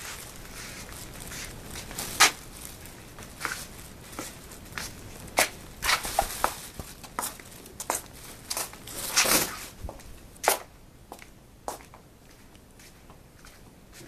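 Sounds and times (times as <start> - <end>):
plastic rustling and crackling: 0.0 - 10.2.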